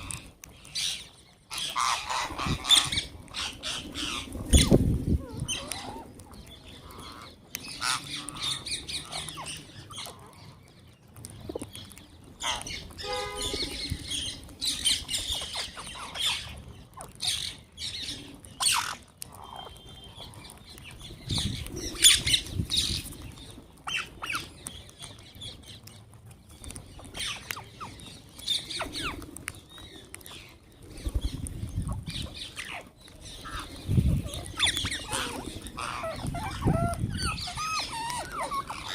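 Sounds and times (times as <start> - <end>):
parrots squawking: 0.0 - 6.1, 6.7 - 10.6, 12.4 - 13.8, 14.7 - 17.6, 18.6 - 20.4, 32.2 - 38.9.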